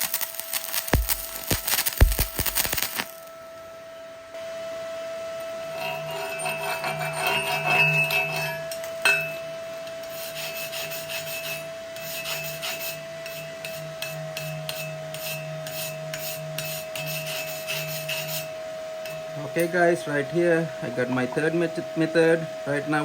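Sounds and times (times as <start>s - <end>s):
sharp snap: 0.0s - 3.1s
welding arc crackling: 0.0s - 3.3s
steady hum: 0.0s - 4.1s.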